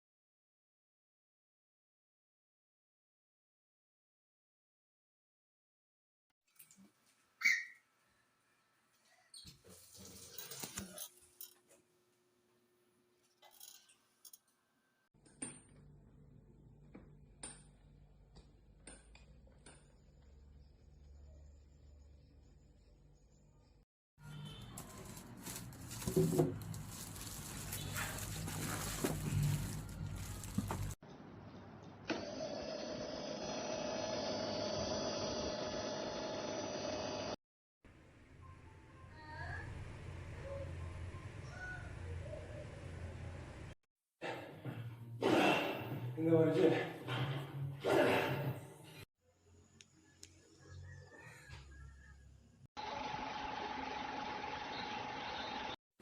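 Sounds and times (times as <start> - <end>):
coffee grinder motor whirring: 32.1 - 37.4, 52.8 - 55.8.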